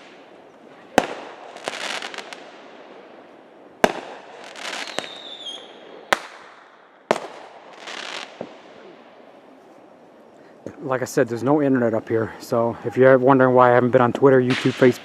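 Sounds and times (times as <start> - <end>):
firework bangs: 0.0 - 9.3, 14.4 - 15.0
firework crackling: 0.0 - 9.4
high firework whistle: 4.7 - 6.4.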